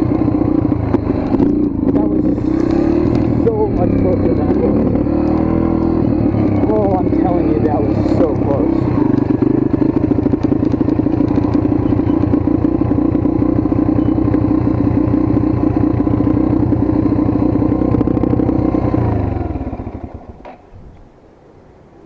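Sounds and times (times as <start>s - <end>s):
dirt bike engine running: 0.0s - 20.4s.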